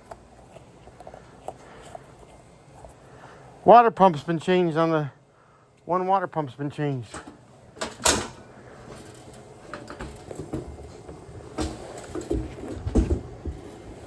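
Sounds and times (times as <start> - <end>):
knocks and clunks: 9.7 - 13.6.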